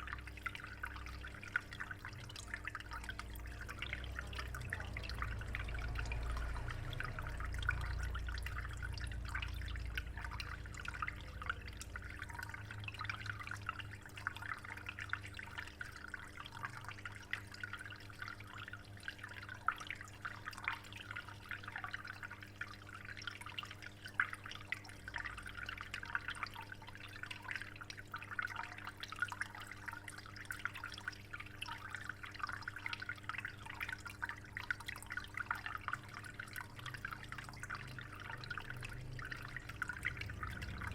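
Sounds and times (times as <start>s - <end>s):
low steady hum: 0.0s - 40.9s
water trickling into aquarium: 0.0s - 40.9s.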